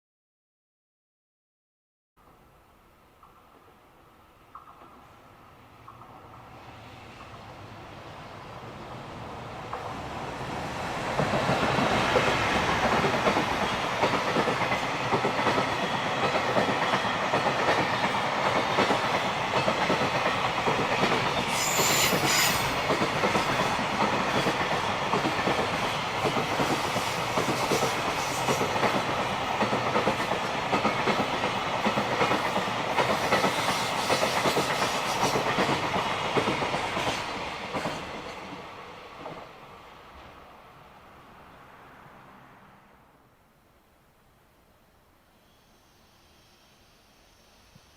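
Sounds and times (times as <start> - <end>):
train wagons rattling over rails: 11.0 - 39.5
train wheels squealing: 21.2 - 23.8, 33.1 - 35.7, 45.4 - 47.9.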